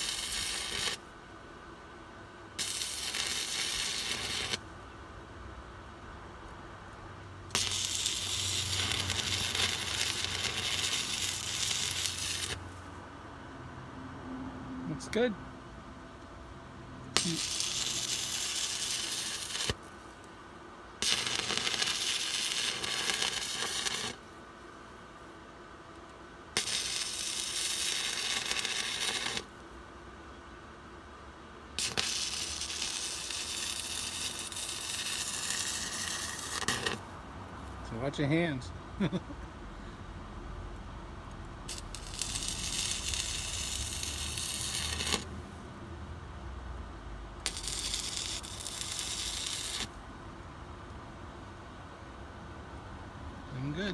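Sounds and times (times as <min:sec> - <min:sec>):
welding arc crackling and sizzling: 0:00.0 - 0:01.1, 0:02.6 - 0:04.7, 0:07.5 - 0:12.9, 0:17.1 - 0:20.4, 0:21.0 - 0:24.2, 0:26.5 - 0:29.6, 0:31.7 - 0:38.6, 0:41.3 - 0:45.4, 0:47.3 - 0:50.0.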